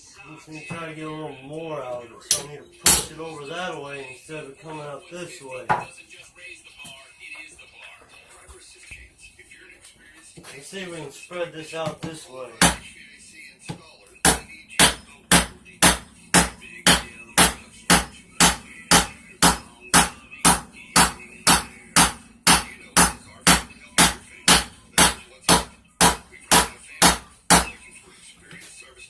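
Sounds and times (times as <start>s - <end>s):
hammer striking metal on anvil: 2.3s - 3.2s, 12.6s - 12.8s, 14.3s - 27.8s.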